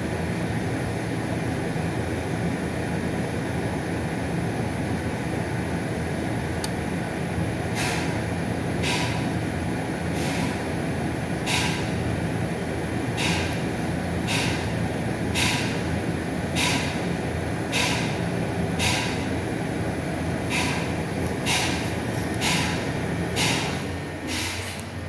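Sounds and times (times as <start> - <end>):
steady low hum: 5.7 - 25.0
repeated banging: 13.2 - 19.5, 20.4 - 24.8.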